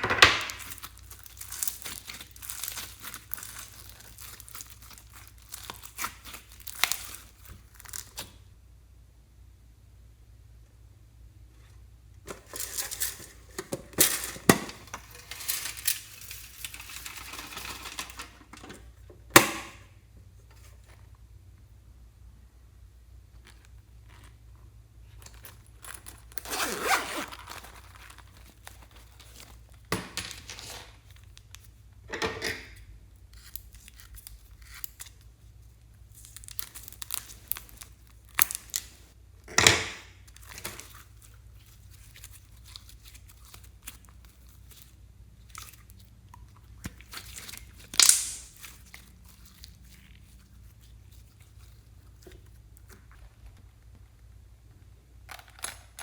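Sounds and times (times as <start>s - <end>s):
slime tearing and crinkling: 0.4s - 8.6s, 12.4s - 18.0s, 23.4s - 31.8s, 33.2s - 39.2s, 40.1s - 53.6s.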